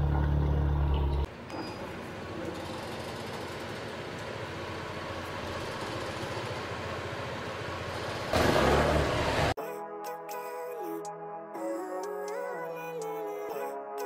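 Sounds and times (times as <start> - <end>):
scooter engine running: 7.6 - 9.5
music: 9.6 - 14.0.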